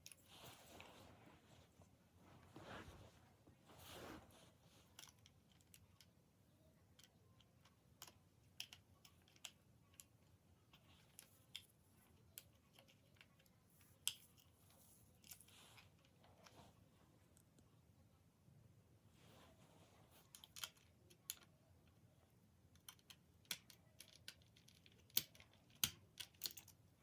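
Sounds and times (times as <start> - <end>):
faint small clicks and taps: 4.8 - 6.2, 6.8 - 16.7, 20.2 - 22.1, 22.7 - 26.9.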